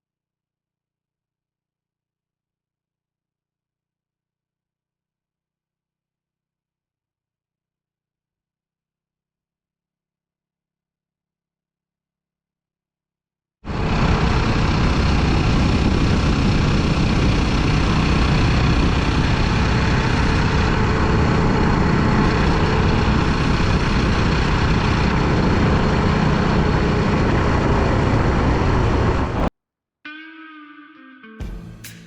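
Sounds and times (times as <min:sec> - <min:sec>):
heavy wind noise: 0:13.7 - 0:29.5
motorcycle engine running: 0:13.7 - 0:29.5, 0:31.4 - 0:32.0.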